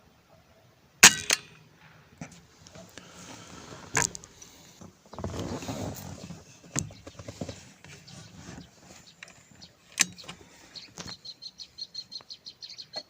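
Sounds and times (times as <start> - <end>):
air rifle shots: 1.0 - 1.8
rustling: 1.8 - 11.2.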